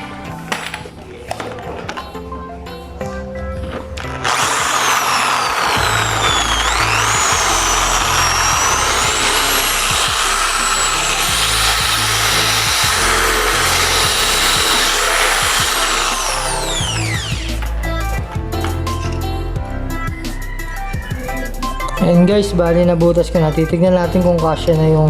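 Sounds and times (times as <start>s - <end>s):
electric drill whining: 4.0s - 19.2s.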